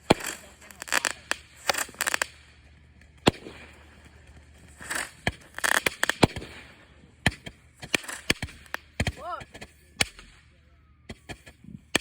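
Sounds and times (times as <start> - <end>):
firework bang: 0.0 - 2.4, 3.2 - 9.2
fireworks popping and crackling: 0.0 - 10.5, 11.1 - 12.0.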